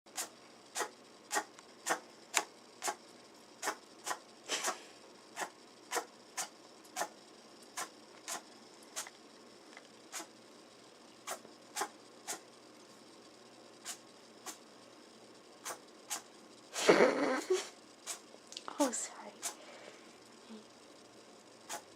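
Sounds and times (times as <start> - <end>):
rabbit sneezing: 0.1 - 3.0, 3.6 - 7.2, 7.8 - 9.1, 10.1 - 10.3, 11.2 - 12.5, 13.8 - 14.6, 15.6 - 18.3, 19.4 - 19.6, 21.6 - 21.9.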